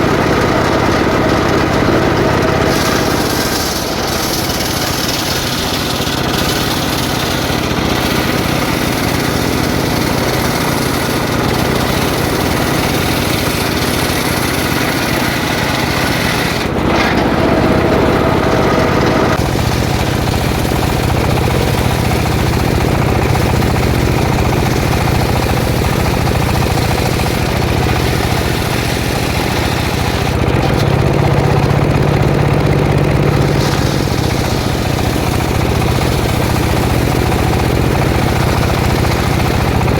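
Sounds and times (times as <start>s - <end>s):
petrol saw cutting wood: 0.0s - 39.9s.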